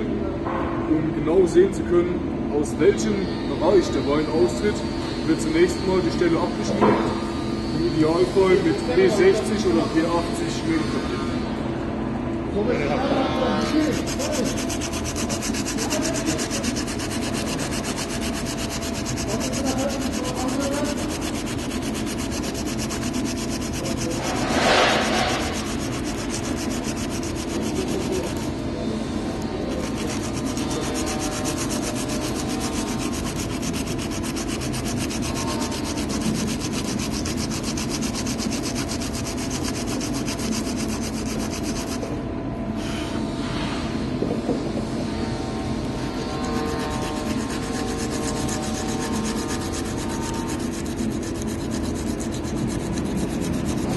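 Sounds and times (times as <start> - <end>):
sandpaper sanding wood: 7.8 - 10.9, 13.4 - 28.6, 29.5 - 42.2, 45.9 - 53.9.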